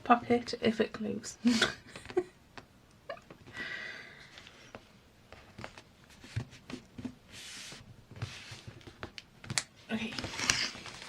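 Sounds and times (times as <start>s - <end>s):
paper rustle: 10.0s - 11.0s.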